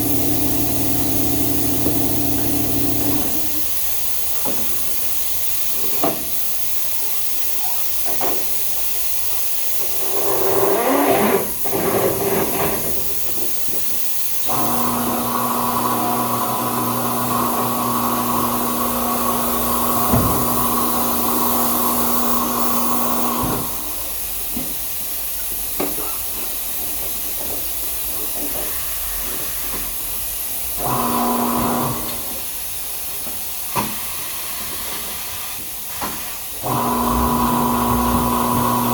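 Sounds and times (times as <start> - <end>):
electric motor humming: 0.0 - 3.6, 14.5 - 23.8, 30.8 - 32.2, 36.6 - 38.9
steady hiss: 0.0 - 15.2, 18.8 - 30.8, 31.9 - 36.6.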